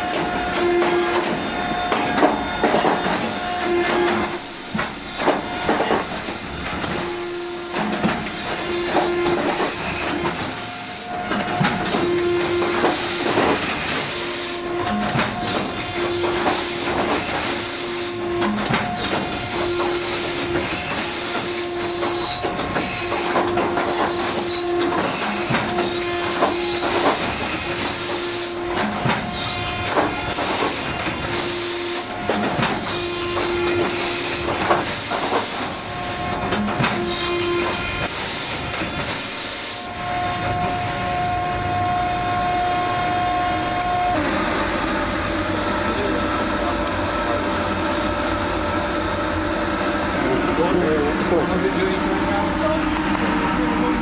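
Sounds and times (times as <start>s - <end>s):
machinery hissing bursts: 12.6s - 14.9s.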